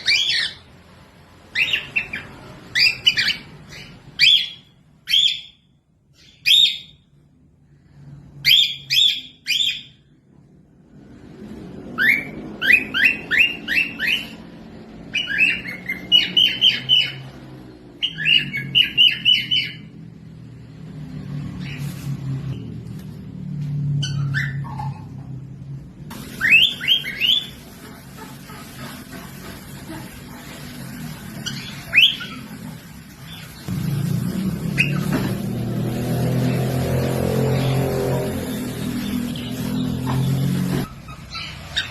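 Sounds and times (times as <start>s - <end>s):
cockatiel chirps: 0.0s - 0.7s, 1.5s - 7.0s, 8.4s - 10.0s, 12.0s - 14.4s, 15.1s - 17.3s, 18.0s - 19.9s, 26.4s - 28.9s
parrot chirping: 0.0s - 7.3s, 8.2s - 10.2s, 11.8s - 22.8s, 23.4s - 25.4s, 26.3s - 41.9s.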